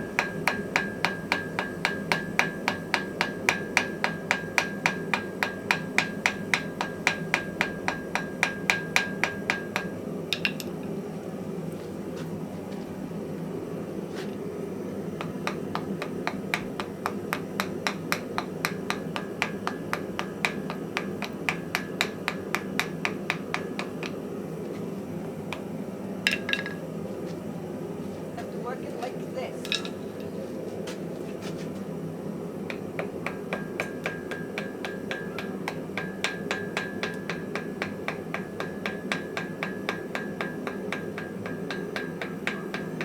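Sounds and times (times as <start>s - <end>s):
hammer ringing on anvil: 0.0s - 10.5s, 15.5s - 24.2s, 32.7s - 43.0s.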